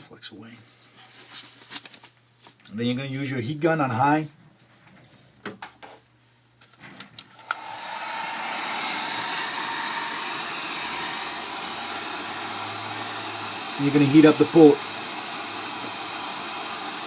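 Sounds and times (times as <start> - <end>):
heat gun blower running: 7.4 - 17.0.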